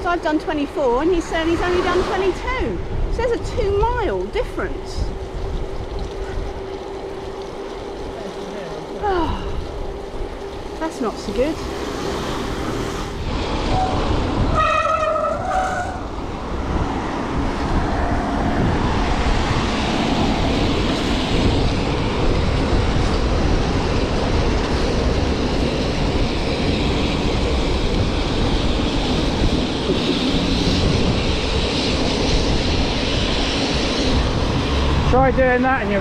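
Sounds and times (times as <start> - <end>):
wind buffeting microphone: 0.0 - 36.0
bicycle tyres on wet road: 0.6 - 36.0.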